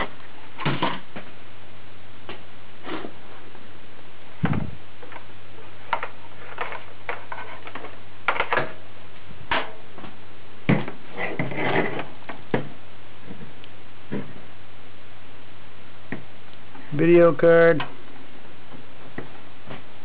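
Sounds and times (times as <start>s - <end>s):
low hum: 0.0s - 20.0s.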